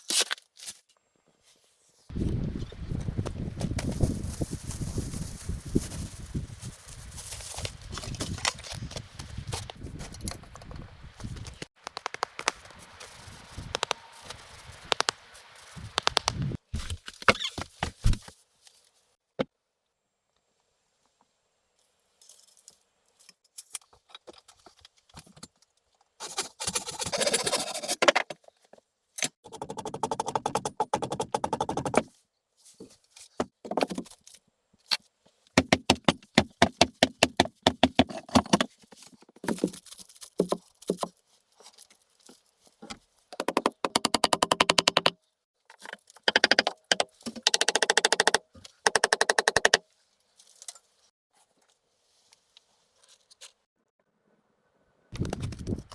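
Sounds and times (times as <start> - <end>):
fast rasping scrapes: 26.2 - 28.0.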